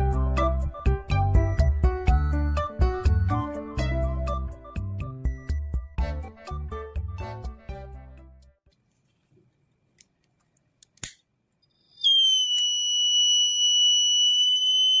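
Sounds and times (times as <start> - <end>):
sharp click: 10.8 - 11.3.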